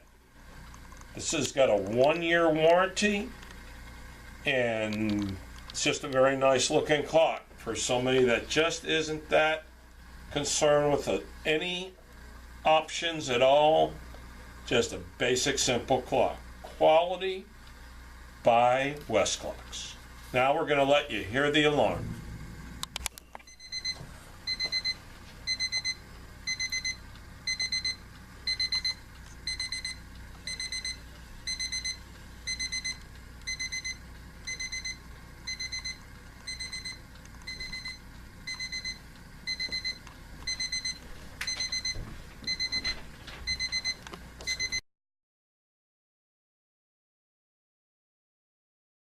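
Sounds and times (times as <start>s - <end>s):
alarm clock beeping: 23.5s - 44.8s.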